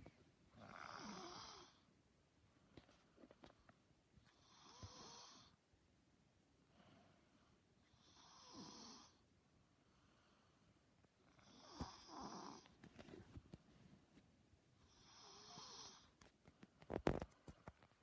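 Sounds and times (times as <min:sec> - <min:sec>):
faint snoring: 0:00.5 - 0:01.9, 0:04.3 - 0:05.6, 0:07.8 - 0:09.2, 0:11.3 - 0:12.7, 0:14.8 - 0:16.2.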